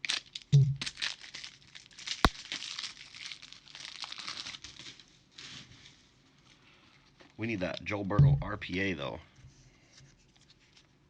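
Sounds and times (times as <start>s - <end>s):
foil wrapper crinkling and tearing: 0.1s - 6.1s.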